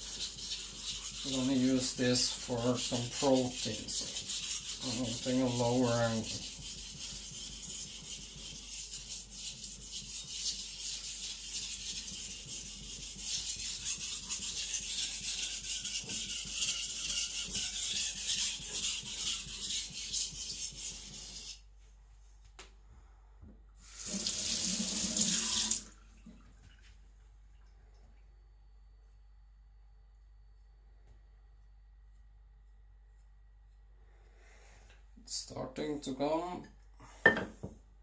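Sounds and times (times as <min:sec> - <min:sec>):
blade stroking on whetstone: 0:00.0 - 0:21.6.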